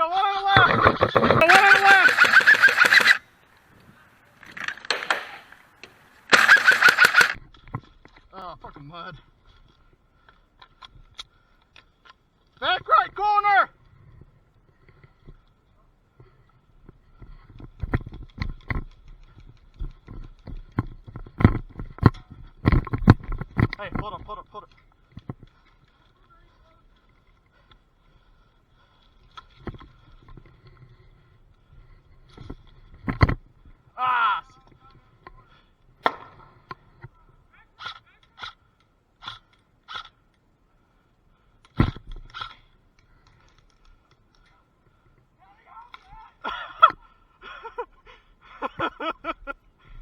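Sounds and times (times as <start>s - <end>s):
airsoft gun shots: 6.3s - 7.4s.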